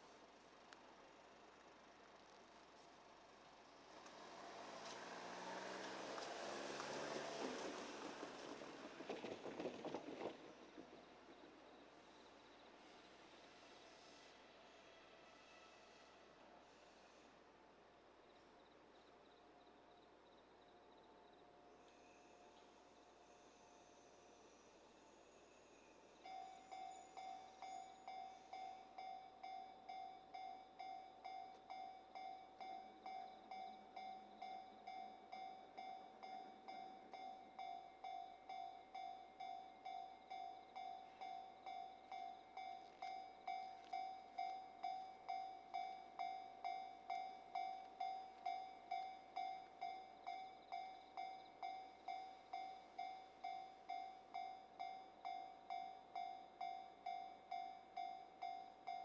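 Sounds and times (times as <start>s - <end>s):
level-crossing warning bell ringing: 26.2s - 59.0s.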